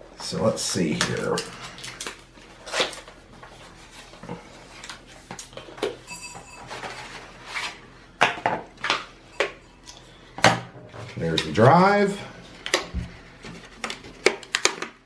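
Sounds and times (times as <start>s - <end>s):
packaging clicks taps and rustles: 13.7s - 15.0s.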